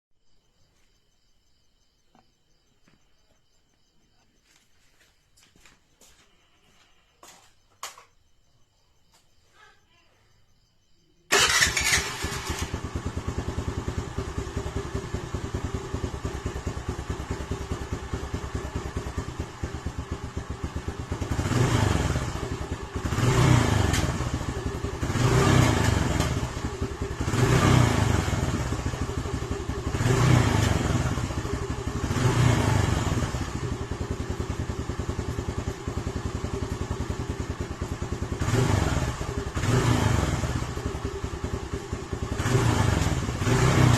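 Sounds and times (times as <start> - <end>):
scooter engine idling: 11.3 - 43.9
scooter engine revving: 11.3 - 43.9.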